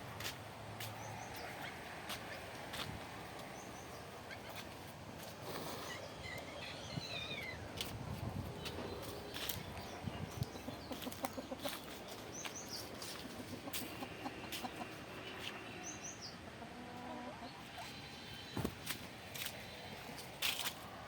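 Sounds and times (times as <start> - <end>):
chickens clucking: 4.2 - 7.9, 8.6 - 15.7, 16.4 - 20.7.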